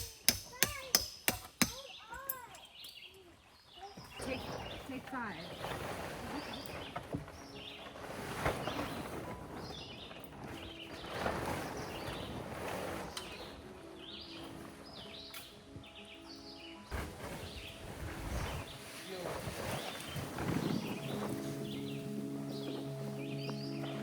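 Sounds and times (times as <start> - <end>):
outdoor background noise: 0.0 - 24.0
birds chirping: 1.8 - 24.0.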